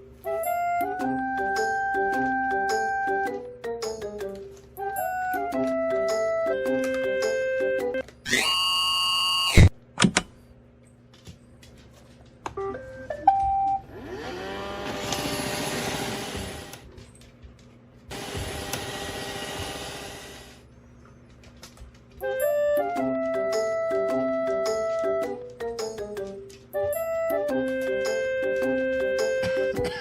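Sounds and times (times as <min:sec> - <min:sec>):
electronic tone: 0:08.3 - 0:09.7
robot vacuum motor whirring: 0:08.3 - 0:09.7, 0:13.9 - 0:16.8, 0:18.1 - 0:20.6.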